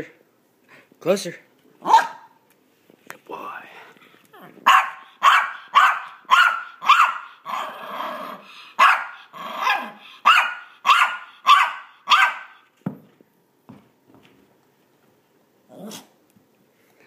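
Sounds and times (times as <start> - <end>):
small dog barking: 1.8 - 2.4, 4.6 - 7.7, 8.8 - 12.6
dog growling: 7.4 - 8.6, 9.2 - 10.1, 15.7 - 16.2.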